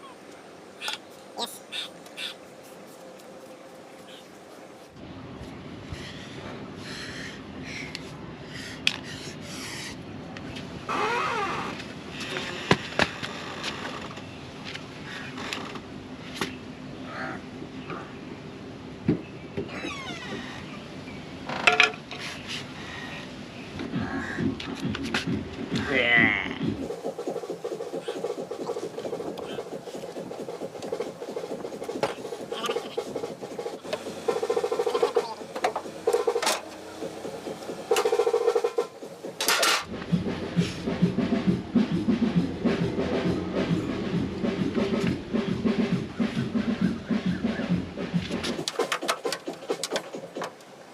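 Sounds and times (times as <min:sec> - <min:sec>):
rapid scrubbing strokes: 0:26.6 - 0:50.6.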